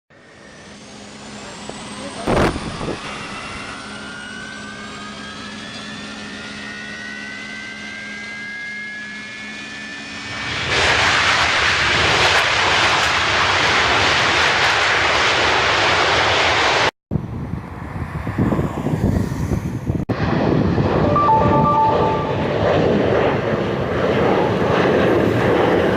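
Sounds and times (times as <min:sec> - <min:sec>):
jet engines spooling up: 0:00.2 - 0:10.7
jet engine roar: 0:00.2 - 0:16.9, 0:17.5 - 0:25.9.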